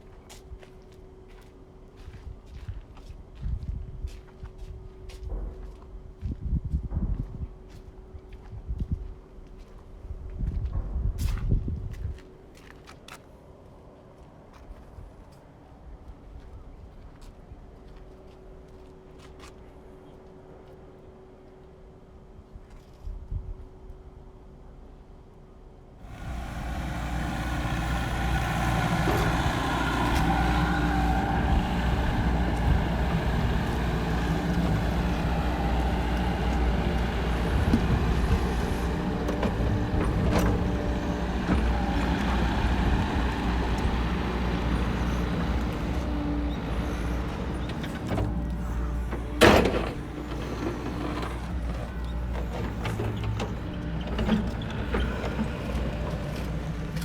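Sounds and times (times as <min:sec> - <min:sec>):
heavy machine engine rumbling: 0:26.0 - 0:57.0.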